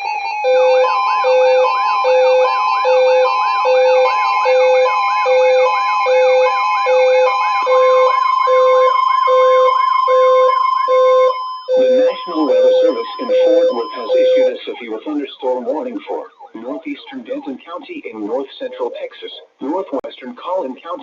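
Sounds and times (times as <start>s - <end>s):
siren whoops: 0.0s - 17.5s
low electronic beep: 0.0s - 17.8s
steady high alert tones: 0.0s - 19.5s.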